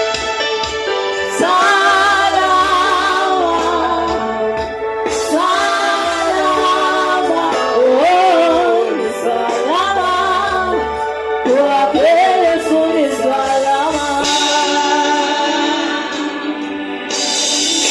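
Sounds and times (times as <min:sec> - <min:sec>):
instrumental backing: 0:00.0 - 0:17.9
voices singing: 0:05.2 - 0:14.9.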